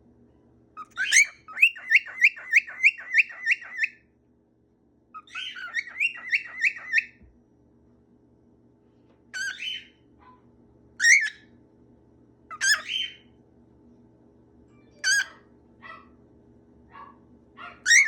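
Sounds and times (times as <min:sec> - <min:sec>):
faint steady hum: 0:00.0 - 0:18.0
pet bird chirping: 0:00.8 - 0:04.0, 0:05.2 - 0:07.2, 0:09.4 - 0:10.0, 0:11.0 - 0:11.5, 0:12.5 - 0:13.3, 0:14.9 - 0:16.1, 0:17.0 - 0:18.0.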